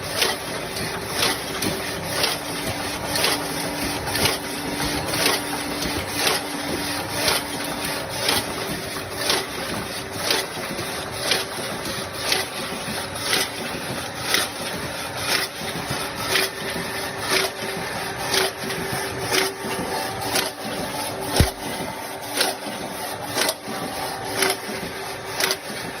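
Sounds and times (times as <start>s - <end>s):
machine hum: 15.9s - 26.0s.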